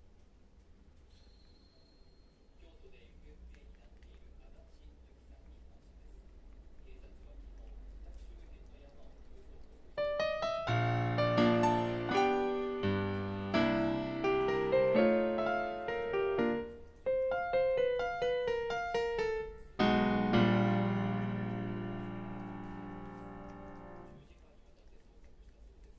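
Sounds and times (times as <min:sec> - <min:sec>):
piano music: 0:10.0 - 0:24.2.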